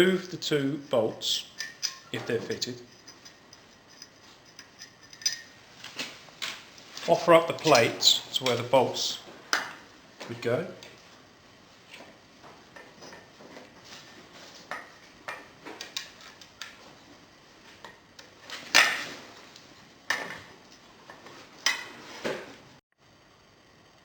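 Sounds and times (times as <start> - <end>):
metal parts clinking and clanking: 1.6 - 5.5.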